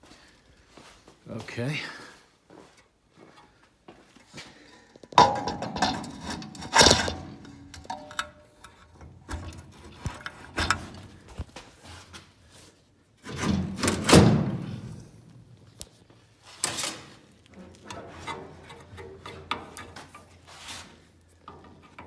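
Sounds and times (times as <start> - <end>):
metal mount clunks and scrapes: 4.6 - 12.1, 17.7 - 20.4
loud metal thunk: 5.2 - 8.1.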